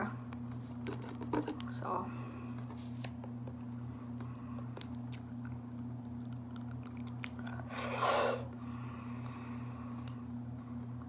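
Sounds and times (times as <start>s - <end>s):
steady low hum: 0.0s - 11.0s
person chewing honeycomb: 4.5s - 8.6s.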